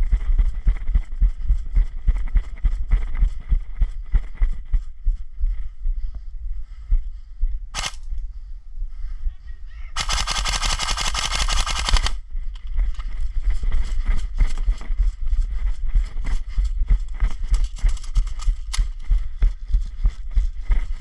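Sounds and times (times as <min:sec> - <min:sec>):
airsoft gun firing bursts: 0:07.8 - 0:08.0, 0:10.0 - 0:12.2.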